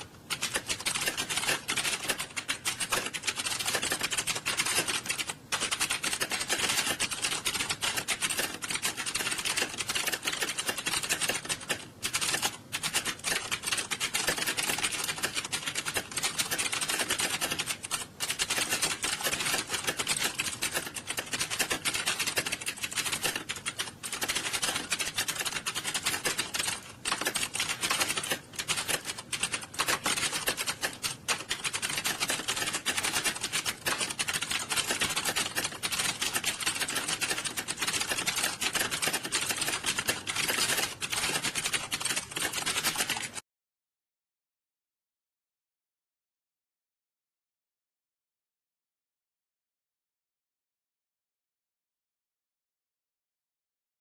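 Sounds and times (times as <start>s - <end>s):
keyboards typing fast: 0.0s - 43.4s.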